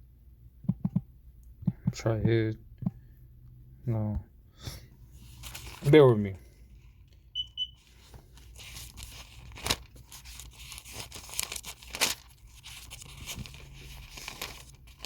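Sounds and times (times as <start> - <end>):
book pages rustling and turning: 5.1 - 6.1, 7.8 - 15.0.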